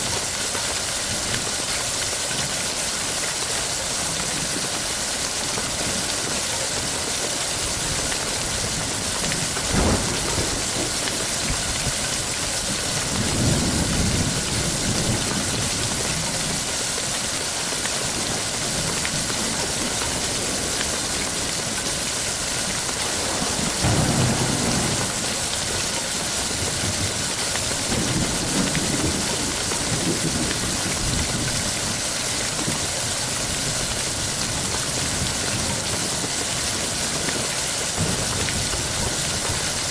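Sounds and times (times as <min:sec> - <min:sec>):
rain hissing: 0:00.6 - 0:31.8
thunder rumbling: 0:07.8 - 0:16.2, 0:22.8 - 0:31.6
sharp thunder crack: 0:09.4 - 0:14.3, 0:22.9 - 0:31.1.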